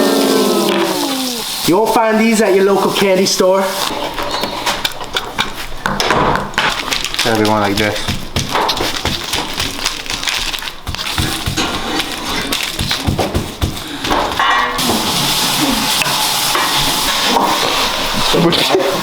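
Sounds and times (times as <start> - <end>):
steady hiss: 0.0 - 4.3, 14.7 - 19.0
knife chopping through chicken: 7.4 - 14.4.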